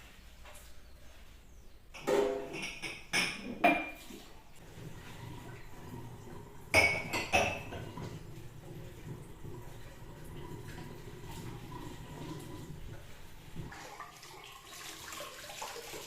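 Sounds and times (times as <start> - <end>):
dishes clinking together: 2.0 - 4.1, 6.7 - 8.2.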